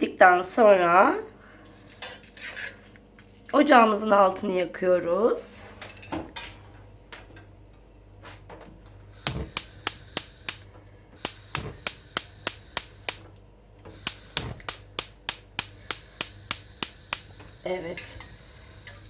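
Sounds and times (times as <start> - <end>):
gas stove igniter clicking: 9.2 - 13.3, 13.9 - 19.0.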